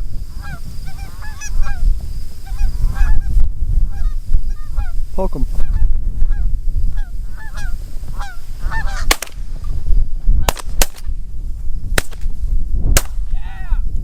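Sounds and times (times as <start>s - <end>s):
wind rumbling on microphone: 0.0s - 14.0s
geese honking: 0.3s - 5.0s, 5.6s - 9.3s
shotgun shots: 9.0s - 9.5s, 10.4s - 11.1s, 12.0s - 13.3s.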